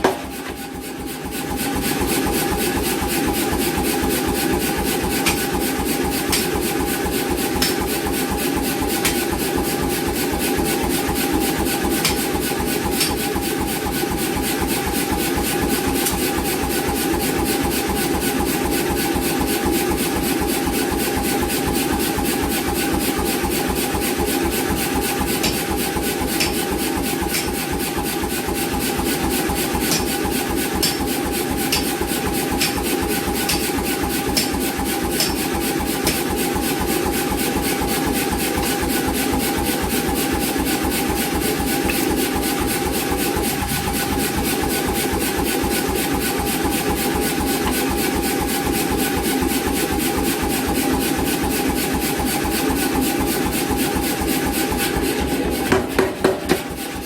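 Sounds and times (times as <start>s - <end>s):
power hammer striking: 0.0s - 0.7s, 2.7s - 9.6s, 11.1s - 13.7s, 16.0s - 16.4s, 25.2s - 28.0s, 29.1s - 48.2s, 55.6s - 57.0s
motor hum: 29.0s - 48.9s.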